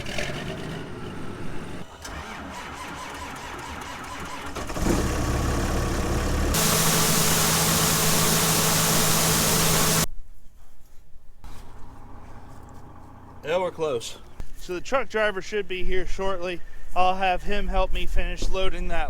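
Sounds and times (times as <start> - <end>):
vehicle engine while driving: 4.5 - 10.1
road noise: 4.6 - 10.1
loud even hiss: 6.5 - 10.1
steady hum: 6.6 - 10.1.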